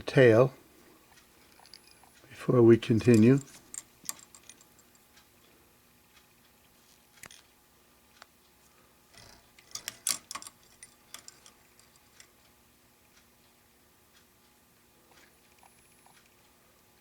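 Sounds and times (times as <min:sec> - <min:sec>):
small clicks and rustling: 0:03.0 - 0:12.5
faint ticks: 0:11.1 - 0:17.0.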